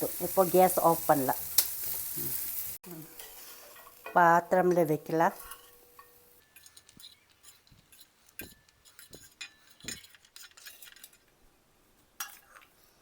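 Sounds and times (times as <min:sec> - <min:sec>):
spoon scraping cooking pan: 0:03.2 - 0:11.4, 0:12.2 - 0:12.8.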